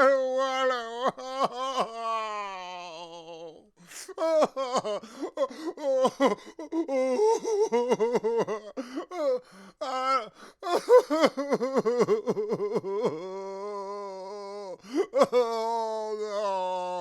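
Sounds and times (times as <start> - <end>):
man sobbing: 0.0 - 17.0
gasping breaths: 5.0 - 5.8, 8.8 - 10.6, 14.8 - 15.2.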